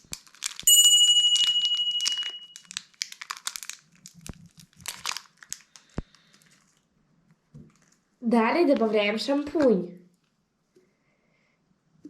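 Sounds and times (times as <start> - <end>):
packaging crinkling and rustling: 0.0 - 0.7, 1.4 - 6.9, 7.6 - 8.1
bright ringing chime: 0.7 - 2.6.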